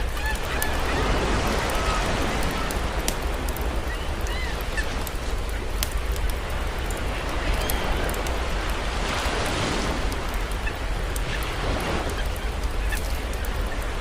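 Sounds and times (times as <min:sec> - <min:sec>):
campfire crackling: 0:00.0 - 0:14.0
ocean surf: 0:00.0 - 0:14.0
faint bird calls: 0:03.7 - 0:05.8.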